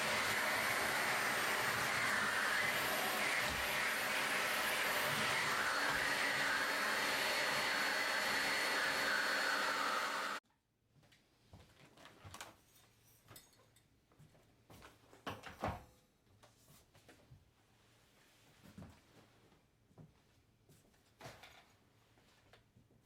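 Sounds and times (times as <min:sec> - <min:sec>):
vacuum cleaner running: 0:00.0 - 0:10.4.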